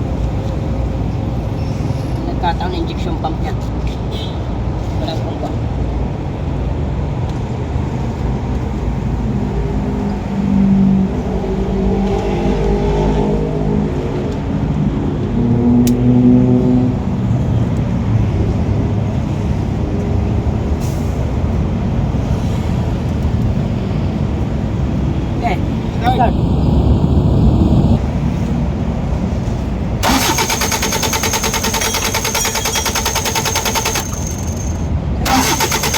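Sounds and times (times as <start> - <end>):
vehicle engine running: 26.1 - 28.2, 29.5 - 35.9.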